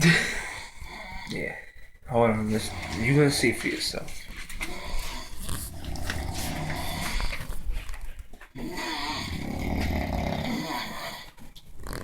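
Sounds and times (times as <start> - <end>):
men snoring loudly: 4.8 - 7.4, 8.6 - 11.3.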